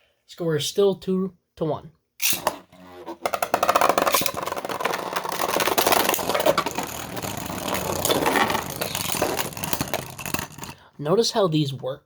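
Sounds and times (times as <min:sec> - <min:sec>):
spinning tops clashing clicks: 0:02.2 - 0:02.6
spinning tops whirring: 0:03.3 - 0:10.8.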